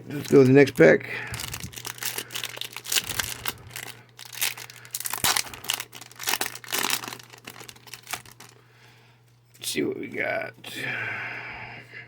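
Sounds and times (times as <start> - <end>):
foil wrapper tearing and crinkling: 0.1 - 8.6.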